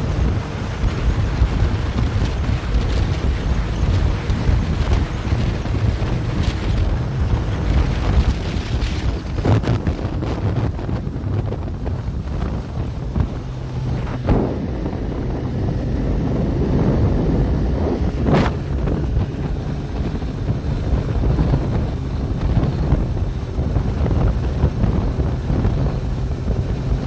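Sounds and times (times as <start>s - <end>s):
low rumble: 0.0s - 27.0s
wind buffeting microphone: 0.0s - 27.0s.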